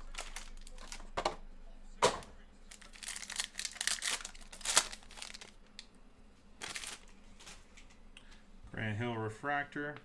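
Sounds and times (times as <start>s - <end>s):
card packaging crinkling and tearing: 0.0s - 1.2s, 2.6s - 5.9s, 6.6s - 7.9s.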